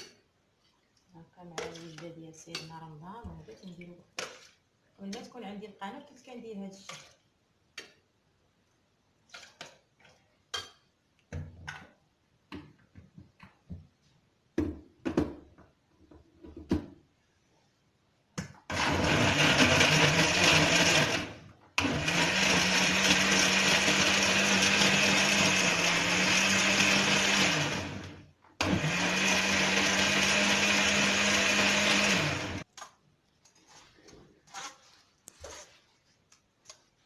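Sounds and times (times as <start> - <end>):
electric blender running: 18.7 - 32.6.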